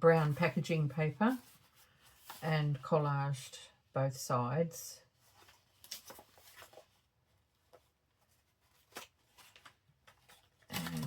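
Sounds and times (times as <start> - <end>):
paper rustling: 0.2 - 2.4, 5.2 - 11.0.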